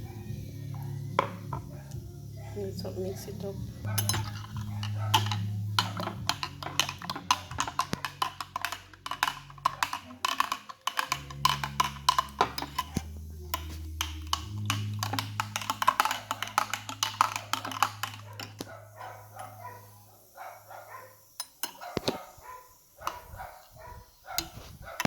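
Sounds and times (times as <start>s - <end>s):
spoon clinking in a glass: 3.9s - 19.6s, 21.4s - 22.2s, 24.4s - 25.0s.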